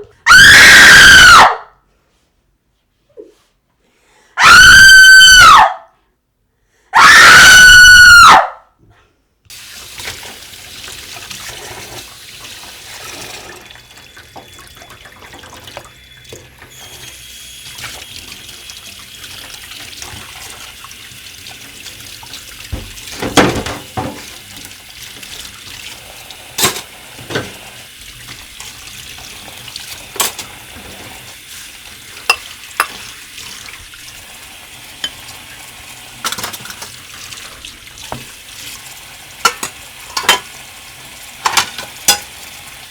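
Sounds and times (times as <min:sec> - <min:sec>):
tap water running into sink: 0:09.5 - 0:42.9.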